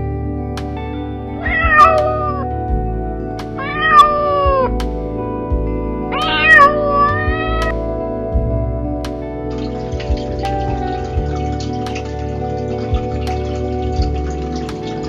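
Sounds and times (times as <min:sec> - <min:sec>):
soft background music: 0:00.0 - 0:15.0
cat meowing: 0:01.4 - 0:02.5, 0:03.6 - 0:04.7, 0:06.1 - 0:07.8.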